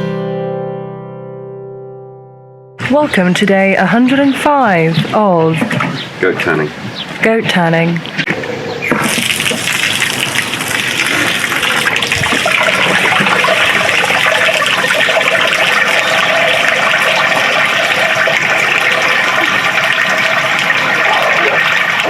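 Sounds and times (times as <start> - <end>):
water gushing: 8.0 - 22.0.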